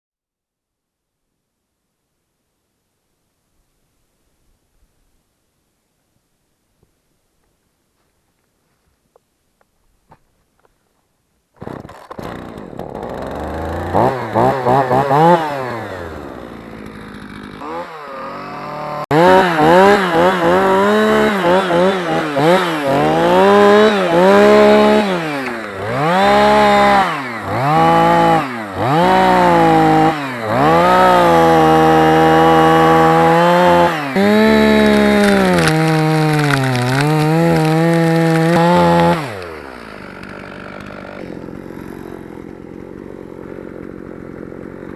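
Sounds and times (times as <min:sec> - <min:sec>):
chainsaw revving and cutting wood: 0:11.6 - 0:44.9.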